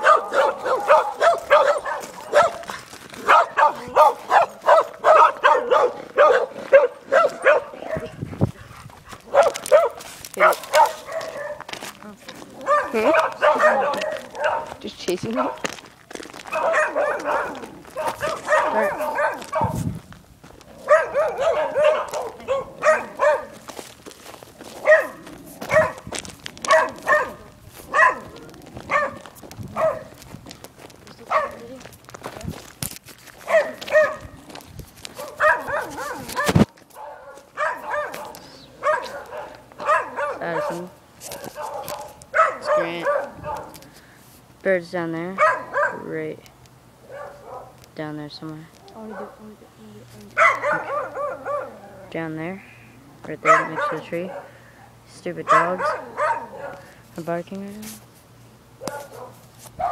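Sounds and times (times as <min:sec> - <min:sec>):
dog barking: 0:00.0 - 0:08.2, 0:09.3 - 0:11.7, 0:12.6 - 0:15.7, 0:16.5 - 0:19.8, 0:20.8 - 0:23.6, 0:24.8 - 0:30.2, 0:31.3 - 0:31.7, 0:33.5 - 0:34.4, 0:35.2 - 0:43.8, 0:45.4 - 0:46.2, 0:47.0 - 0:47.8, 0:49.0 - 0:49.4, 0:50.4 - 0:51.9, 0:53.4 - 0:54.6, 0:55.4 - 0:57.0, 0:58.8 - 0:59.9.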